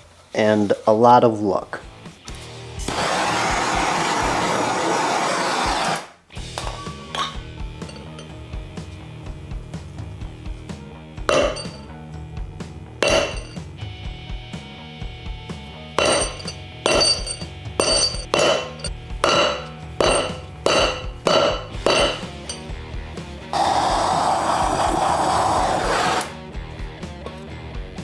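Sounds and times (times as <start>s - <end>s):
hammer blows ringing on steel: 16.0s - 22.7s.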